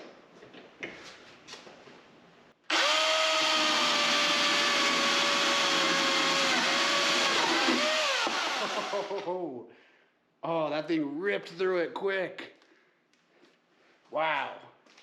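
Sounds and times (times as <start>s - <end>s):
chainsaw cutting wood: 2.7s - 9.2s.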